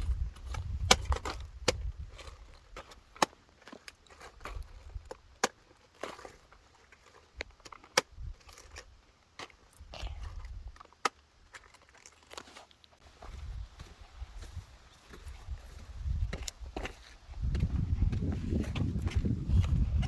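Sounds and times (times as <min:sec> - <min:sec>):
wind on microphone: 0:00.0 - 0:02.2, 0:13.2 - 0:20.0
cabbage leaves crunching and snapping: 0:00.0 - 0:13.4.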